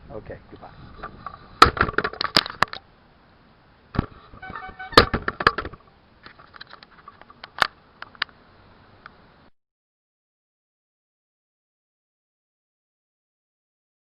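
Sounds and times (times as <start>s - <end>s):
sharp handling clicks and knocks: 1.0s - 2.8s, 4.0s - 8.4s.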